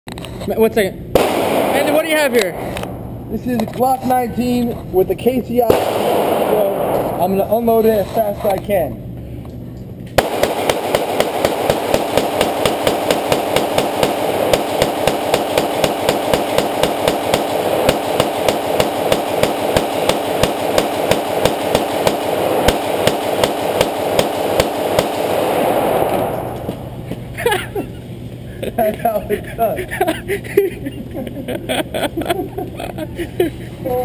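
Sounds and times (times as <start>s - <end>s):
pistol gunshots: 1.2s - 3.3s, 5.6s - 7.5s, 10.2s - 27.1s.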